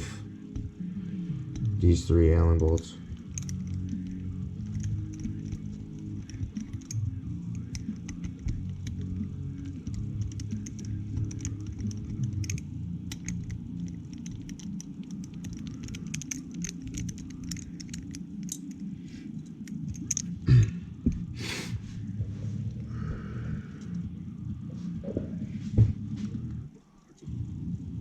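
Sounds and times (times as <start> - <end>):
steady low hum: 0.0 - 28.0
loose parts rattling: 1.4 - 21.4
allen key clicking on bolts: 2.6 - 20.4.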